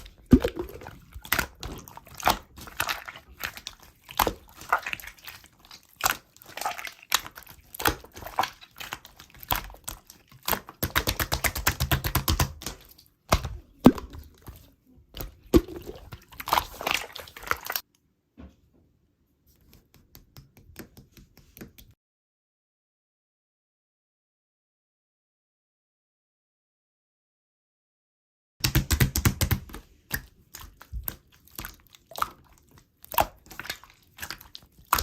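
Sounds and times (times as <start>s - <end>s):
slime squeezed by hand: 0.0s - 9.8s, 15.4s - 17.8s.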